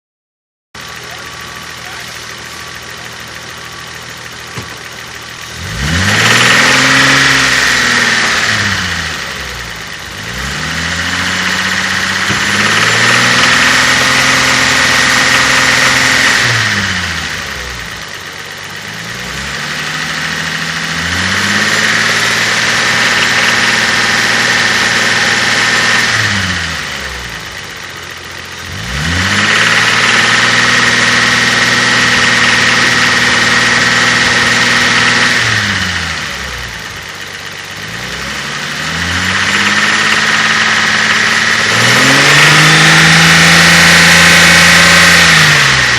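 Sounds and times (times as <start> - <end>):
engine tapping noise: 0.8 - 8.6, 11.2 - 16.5, 20.0 - 26.2, 36.5 - 45.9
car engine idling and revving: 0.8 - 45.9.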